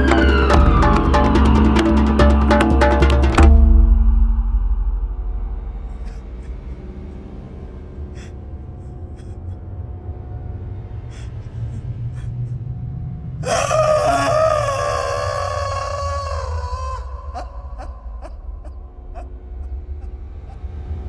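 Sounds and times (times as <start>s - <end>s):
wavering wail: 0.0s - 2.6s, 13.4s - 20.6s
low rumbling drone: 0.0s - 21.0s
deep boom: 3.2s - 6.8s.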